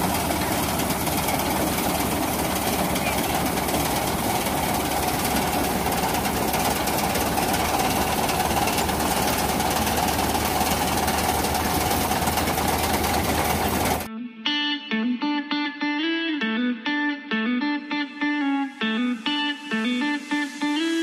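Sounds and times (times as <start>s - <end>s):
combine harvester running: 0.0s - 14.1s
guitar music: 14.1s - 21.0s.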